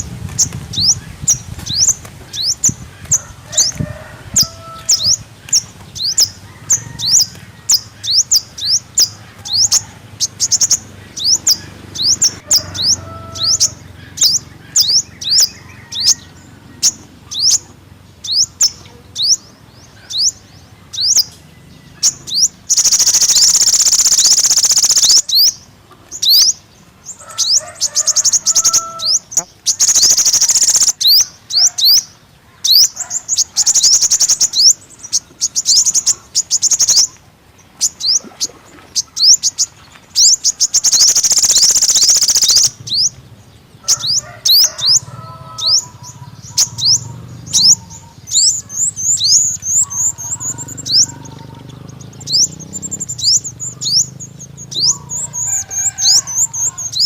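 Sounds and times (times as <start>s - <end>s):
bird rapid high trills: 22.1s - 25.6s, 27.3s - 31.7s, 33.0s - 34.8s, 40.2s - 43.2s.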